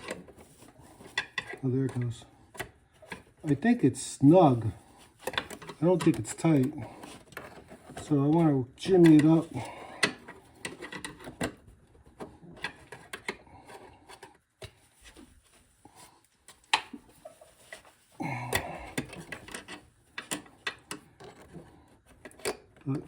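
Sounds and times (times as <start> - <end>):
hose clamp scraping and rubbing: 0.0 - 3.7, 4.4 - 11.6, 18.9 - 22.8.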